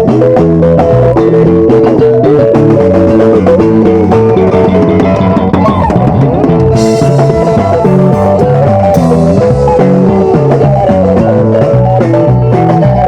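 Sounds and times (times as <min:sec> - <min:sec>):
bass line: 0:00.0 - 0:13.0
drum kit: 0:00.0 - 0:13.0
guitar runs: 0:00.0 - 0:13.0.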